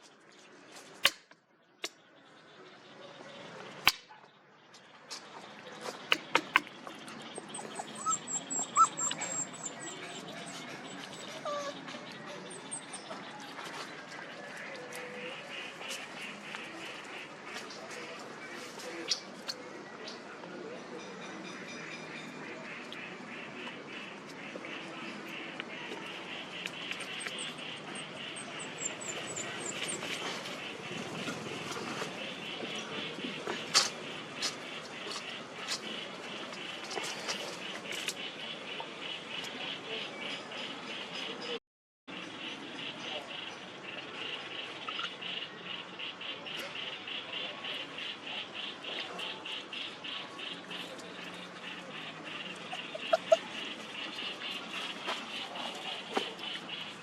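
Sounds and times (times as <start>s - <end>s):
steady outdoor noise: 0.0s - 57.0s
puppies whimpering: 7.3s - 13.3s, 27.1s - 30.1s, 52.6s - 53.8s.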